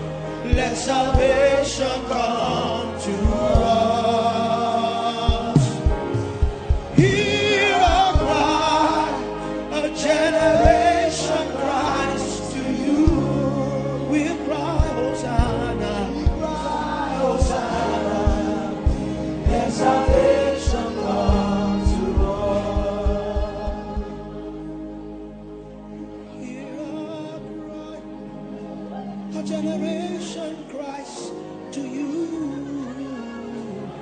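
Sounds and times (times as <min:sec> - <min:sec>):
choir singing: 0:00.0 - 0:34.0
sustained instrumental chords: 0:00.0 - 0:34.0
drum hits: 0:05.3 - 0:08.6, 0:17.4 - 0:24.2.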